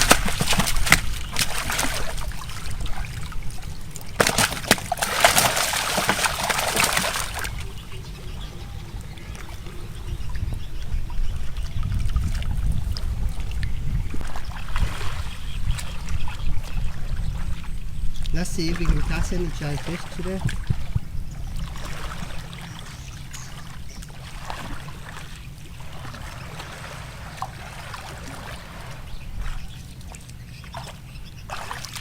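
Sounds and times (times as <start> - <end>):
water splashing and trickling: 0.0 - 32.0.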